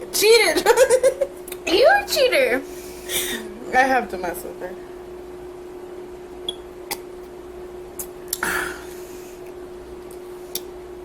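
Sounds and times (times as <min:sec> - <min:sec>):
steady electrical hum: 0:00.0 - 0:11.0.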